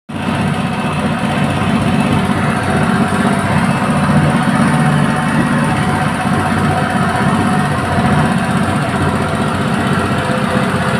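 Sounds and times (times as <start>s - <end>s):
small engine running steadily: 0.1s - 10.9s.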